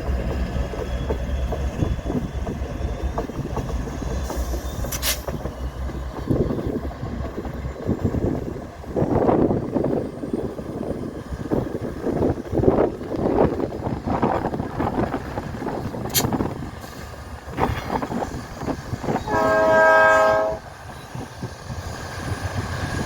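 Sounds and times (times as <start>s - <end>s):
freight train rumbling past: 0.0s - 23.0s
wind buffeting microphone: 0.0s - 23.0s
short hiss: 4.4s - 5.3s.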